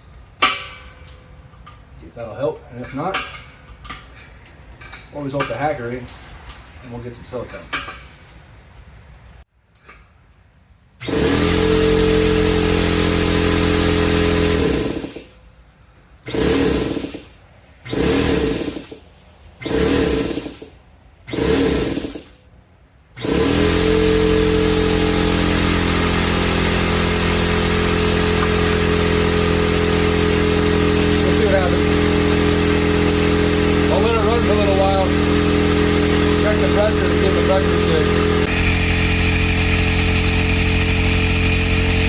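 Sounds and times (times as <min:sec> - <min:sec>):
air compressor running: 0:11.0 - 0:15.4, 0:16.2 - 0:22.5, 0:23.2 - 0:42.0.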